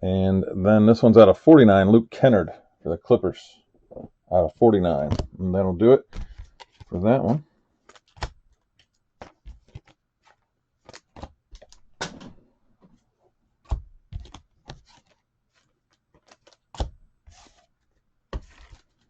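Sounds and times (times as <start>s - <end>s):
cards rustling: 6.0s - 12.0s, 13.6s - 19.0s
trading cards clicking and tapping: 6.1s - 12.2s.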